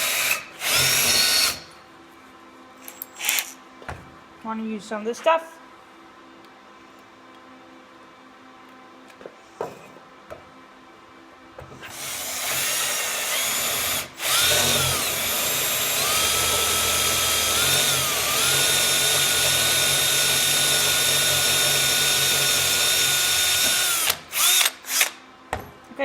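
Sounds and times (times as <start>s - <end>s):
electric drill whining: 0.0s - 1.8s, 3.1s - 3.6s, 11.8s - 25.2s.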